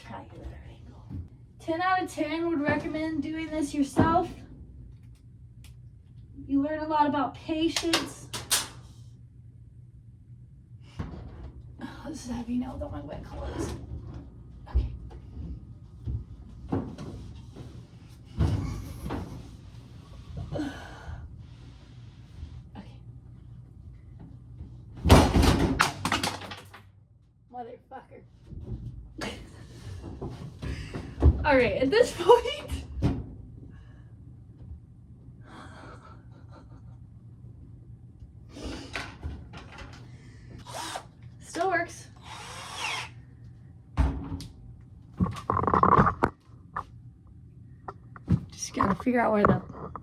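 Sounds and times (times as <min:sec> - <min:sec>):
heavy thumps from laundry appliance: 0:02.6 - 0:04.6, 0:25.0 - 0:26.3, 0:30.0 - 0:33.5, 0:44.0 - 0:44.5.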